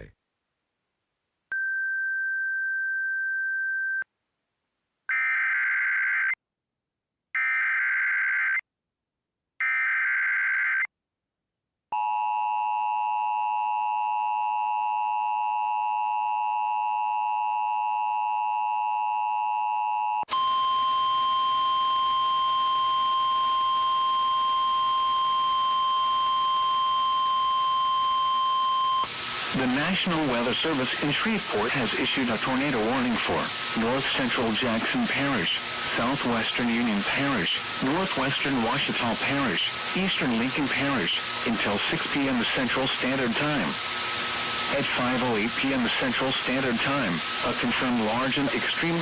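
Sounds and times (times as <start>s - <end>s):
single steady warning tone: 12.0s - 33.1s
digital data bursts: 29.5s - 43.8s, 44.7s - 49.0s.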